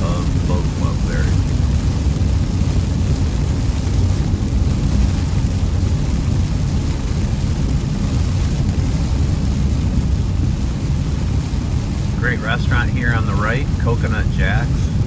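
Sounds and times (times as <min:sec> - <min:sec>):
car road and engine noise: 0:00.0 - 0:15.0.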